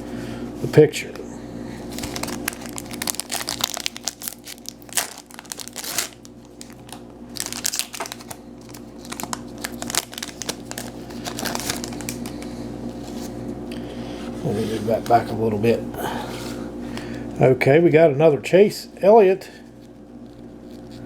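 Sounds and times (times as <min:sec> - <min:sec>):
faint steady hum: 0:00.0 - 0:21.0
foil wrapper crinkling and tearing: 0:01.9 - 0:13.4, 0:19.6 - 0:21.0.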